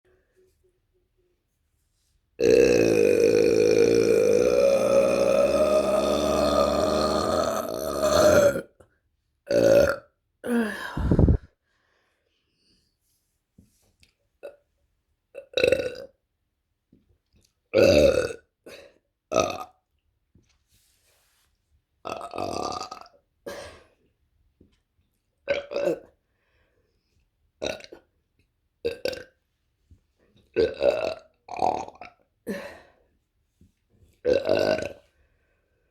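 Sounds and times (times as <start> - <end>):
woman burping: 2.4 - 8.8, 9.5 - 11.5, 17.8 - 19.7, 25.5 - 26.1, 34.3 - 35.0.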